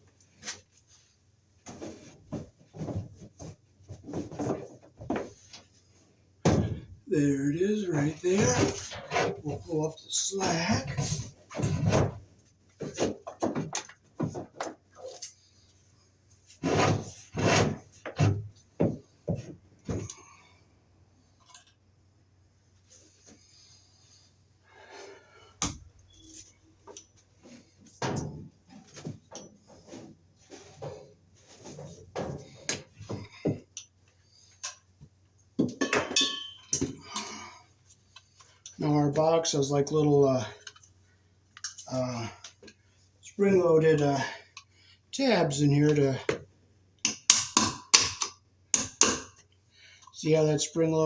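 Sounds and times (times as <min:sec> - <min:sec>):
handling clicks knocks and rustles: 0:10.8 - 0:15.5, 0:40.6 - 0:42.8
cable scraping through wall hole: 0:16.6 - 0:18.3
sharp metallic clinks: 0:36.1 - 0:36.8.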